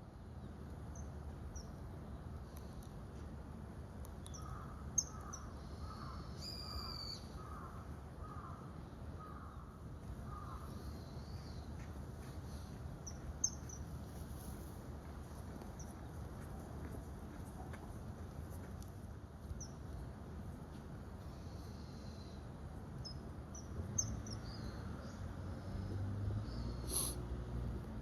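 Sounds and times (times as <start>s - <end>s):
crow cawing: 4.4s - 6.2s, 7.4s - 8.6s, 10.3s - 10.7s.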